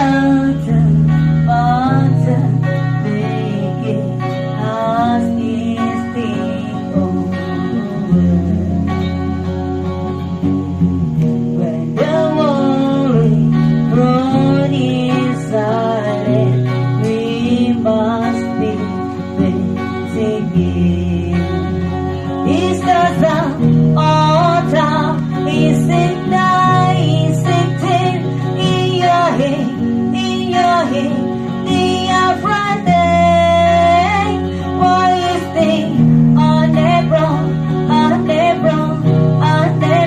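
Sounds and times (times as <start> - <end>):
guitar accompaniment: 0.0 - 40.0
person singing with vibrato: 0.0 - 40.0.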